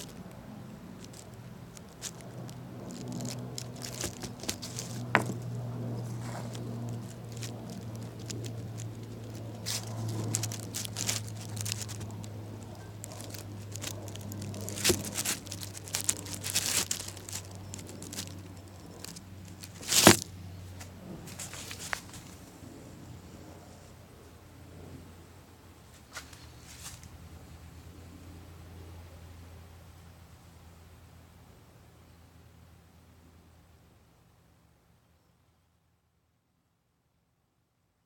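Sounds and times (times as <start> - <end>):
crackling and rustling: 0.0 - 24.0, 25.8 - 27.9
steady low hum: 0.0 - 36.1.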